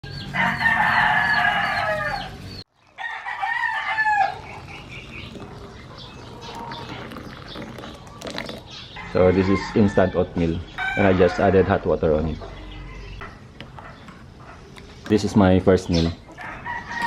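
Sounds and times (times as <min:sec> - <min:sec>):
rooster crowing: 0:00.0 - 0:04.7, 0:09.0 - 0:11.9, 0:16.4 - 0:17.0.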